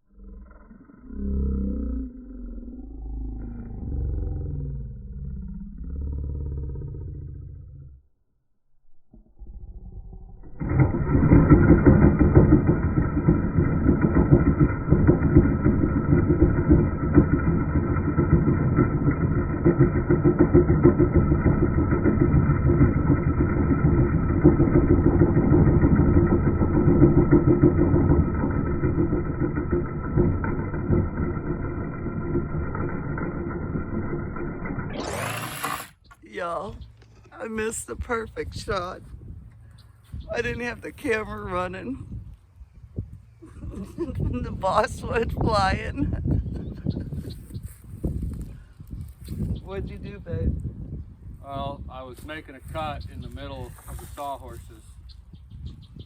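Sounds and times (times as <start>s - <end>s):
motor running with pulsing beat: 10.4s - 36.1s, 43.9s - 48.4s.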